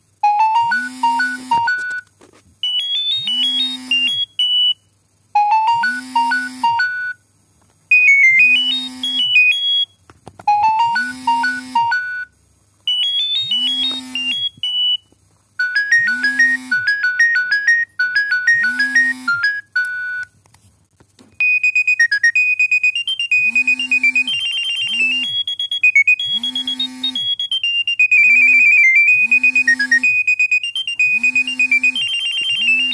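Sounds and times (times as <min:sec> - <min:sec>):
synthesised ringtone melody: 0:00.2 - 0:02.0, 0:02.6 - 0:04.8, 0:05.4 - 0:07.2, 0:07.9 - 0:09.9, 0:10.5 - 0:12.3, 0:12.9 - 0:15.0, 0:15.6 - 0:20.3, 0:21.4 - 0:32.9
ringtone with steady high tone: 0:00.2 - 0:07.2, 0:07.9 - 0:20.4, 0:21.4 - 0:32.9.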